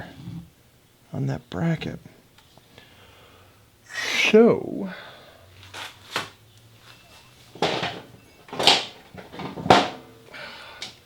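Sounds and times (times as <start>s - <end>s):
hard knocks and clicks: 7.6s - 10.1s.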